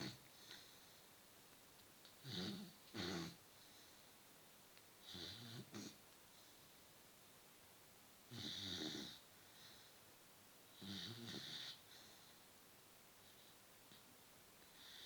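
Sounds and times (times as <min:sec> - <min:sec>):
dog snoring: 0:00.0 - 0:00.7, 0:02.2 - 0:03.4, 0:05.0 - 0:06.0, 0:08.3 - 0:09.2, 0:10.8 - 0:12.1.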